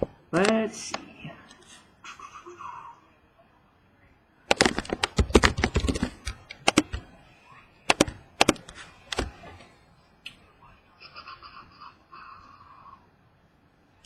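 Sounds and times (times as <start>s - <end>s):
typing on computer keyboard: 4.5s - 7.1s, 7.9s - 9.3s.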